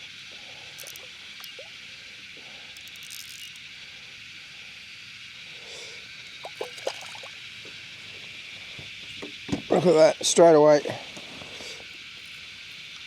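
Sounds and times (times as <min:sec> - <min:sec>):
cicadas buzzing: 0:00.0 - 0:13.0
small sharp clicks: 0:00.8 - 0:01.7, 0:02.8 - 0:03.6.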